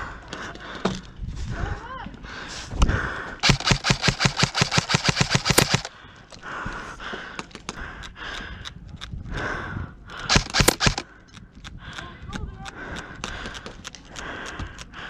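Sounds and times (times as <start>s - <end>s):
airsoft gun full-auto bursts: 3.4s - 5.9s, 10.3s - 11.1s.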